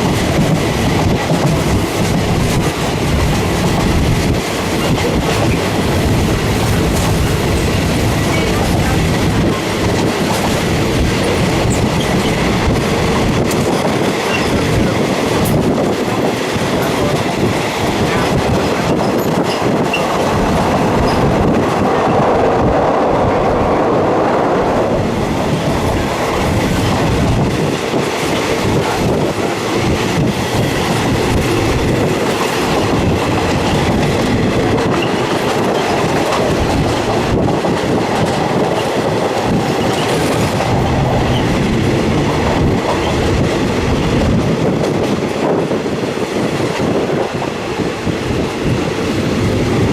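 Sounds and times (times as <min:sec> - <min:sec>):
train wheels clattering on rails: 0:00.0 - 0:23.5, 0:24.5 - 0:49.9.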